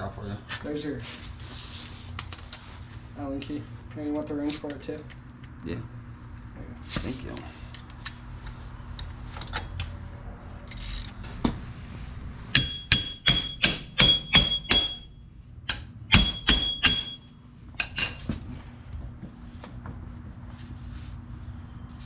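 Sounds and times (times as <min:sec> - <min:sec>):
hammer clanging on steel: 0:12.5 - 0:18.5.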